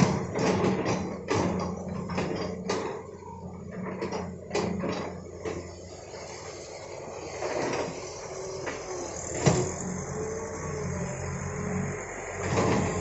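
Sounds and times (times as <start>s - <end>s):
metal knocks and clanks: 0.0s - 5.7s
excavator engine drone: 0.0s - 13.0s.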